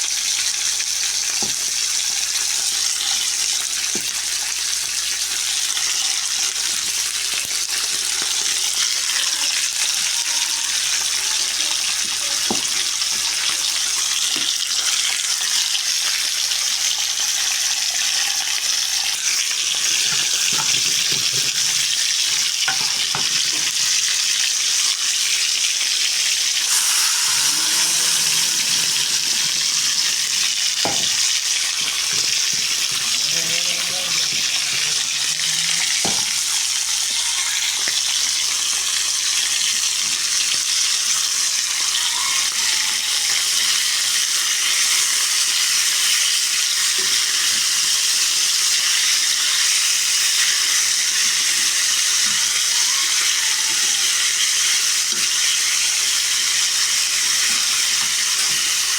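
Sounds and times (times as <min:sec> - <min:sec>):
food sizzling in a pan: 0:00.0 - 0:58.9.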